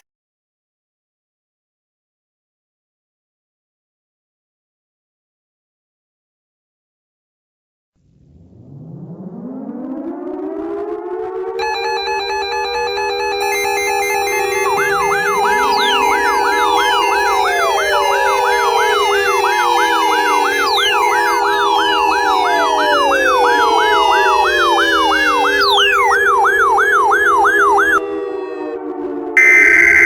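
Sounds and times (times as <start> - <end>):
steady held siren tones: 8.6 - 28.0, 29.4 - 30.0
electronic siren yelp: 11.6 - 28.1, 29.4 - 30.0
long falling pitch sweeps: 29.4 - 30.0.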